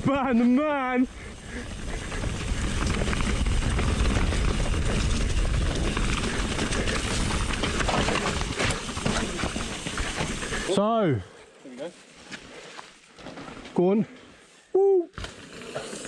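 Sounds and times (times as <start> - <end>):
wind buffeting microphone: 1.0 - 8.6
bike clattering over ground: 1.6 - 10.7.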